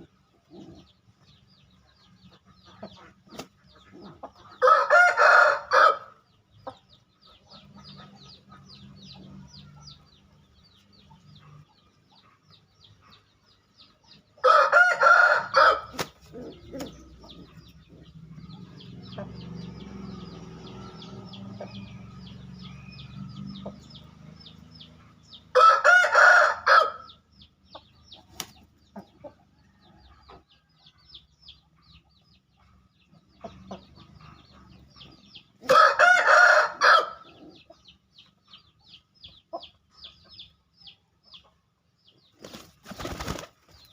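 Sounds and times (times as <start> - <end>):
rooster crowing: 4.6 - 6.1, 14.4 - 15.9, 25.5 - 27.1, 35.7 - 37.2.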